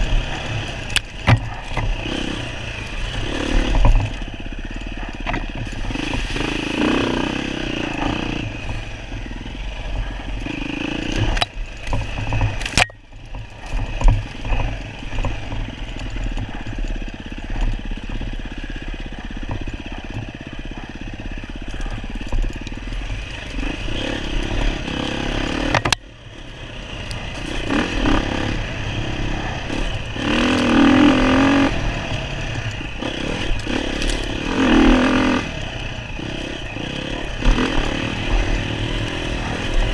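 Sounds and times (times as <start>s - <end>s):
bike clattering over rough ground: 0.0s - 39.9s
dirt bike engine revving: 0.0s - 39.9s.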